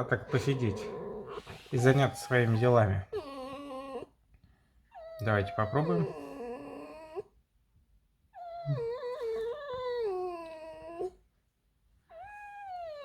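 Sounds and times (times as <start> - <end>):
fox squeaking: 0.2 - 4.1.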